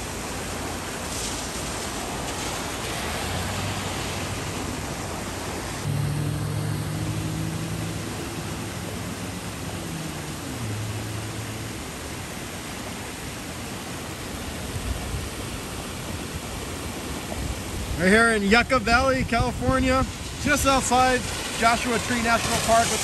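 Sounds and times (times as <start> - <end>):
flood water rushing: 0.0 - 23.0
low hum: 2.9 - 13.4.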